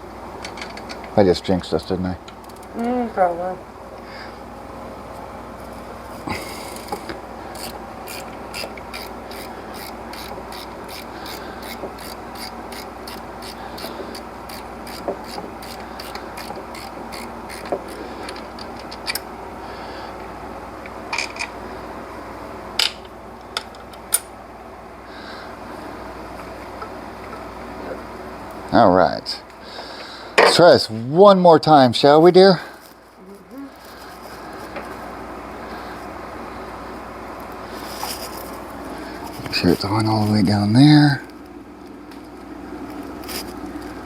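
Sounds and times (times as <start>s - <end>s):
steady background noise: 0.0s - 44.0s.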